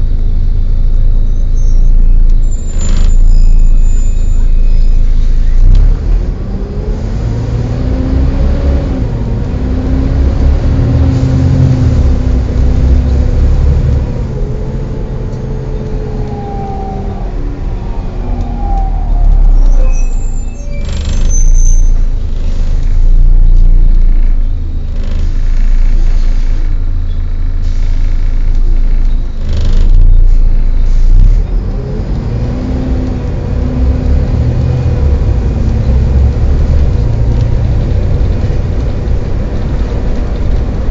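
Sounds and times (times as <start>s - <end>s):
high squeal: 0.0s - 5.7s, 14.4s - 22.2s
bus engine accelerating: 0.0s - 40.9s.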